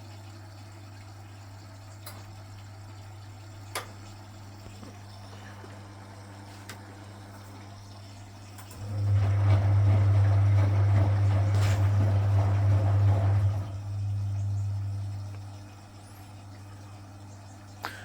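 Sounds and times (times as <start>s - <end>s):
washing machine motor hum: 0.0s - 18.0s
water and laundry churning: 0.0s - 18.0s.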